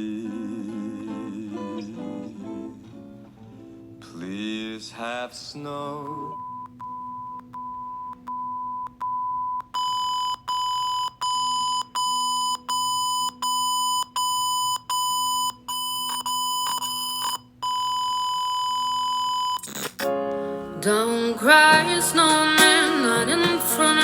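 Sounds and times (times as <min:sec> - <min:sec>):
electronic beeping: 0:06.4 - 0:20.2.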